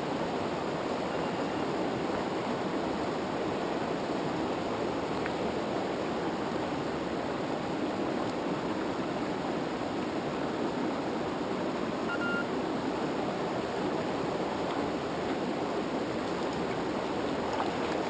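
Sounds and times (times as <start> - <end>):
river rapids rushing: 0.0 - 18.0
short high tone: 12.0 - 12.5.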